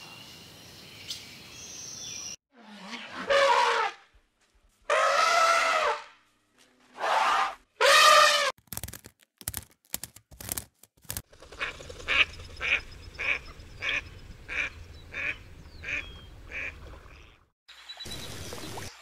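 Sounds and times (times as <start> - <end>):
bird calling: 11.3 - 17.4.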